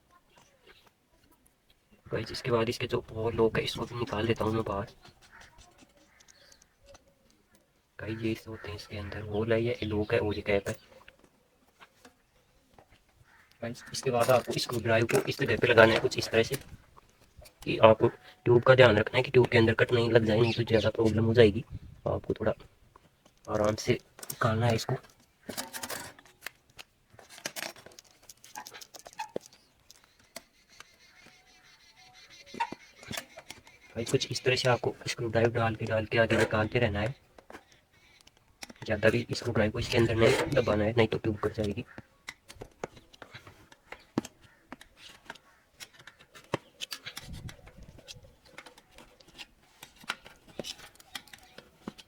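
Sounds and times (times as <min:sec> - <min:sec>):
screwdriver scraping on metal rim: 0:23.8 - 0:26.3, 0:32.5 - 0:41.8
screwdriver clicking and scraping rim: 0:41.6 - 0:52.0.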